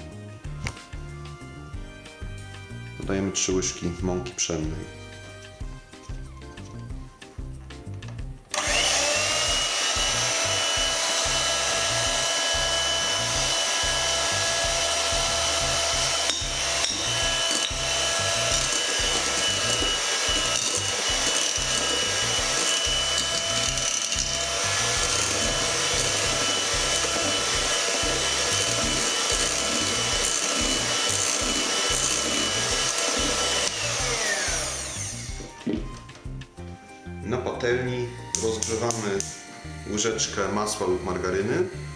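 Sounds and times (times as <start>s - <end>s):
background music with beat: 0.0s - 40.7s
electric mixer whining: 8.5s - 36.2s, 38.4s - 41.9s.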